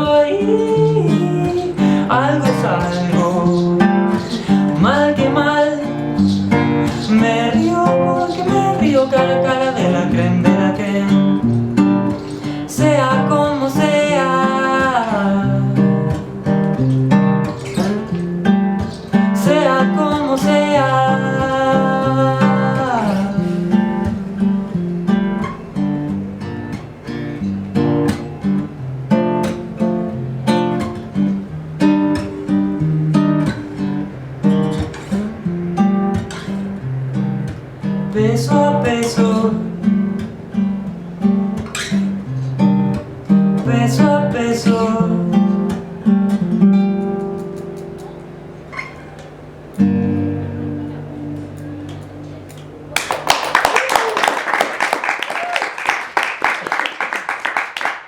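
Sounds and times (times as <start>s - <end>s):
wordless vocal melody: 0.0s - 16.9s, 19.1s - 24.9s, 38.0s - 40.8s, 42.2s - 46.3s
acoustic guitar strumming: 0.0s - 53.0s.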